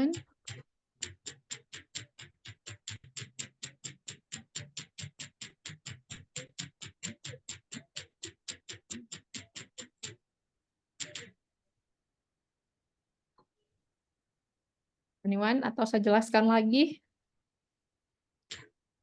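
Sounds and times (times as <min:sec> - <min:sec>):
steady ticking: 0:00.0 - 0:10.2, 0:11.0 - 0:11.3.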